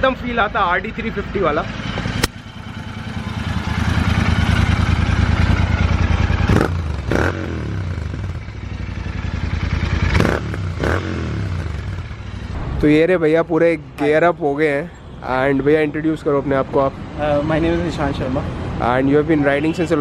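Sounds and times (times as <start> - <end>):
motorcycle engine revving: 1.1 - 12.6.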